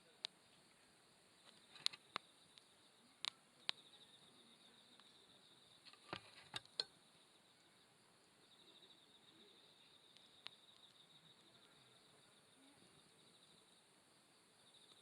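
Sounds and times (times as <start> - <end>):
campfire crackling: 0.0 - 12.8
insects trilling: 0.0 - 15.0
burning wood popping: 1.4 - 3.9.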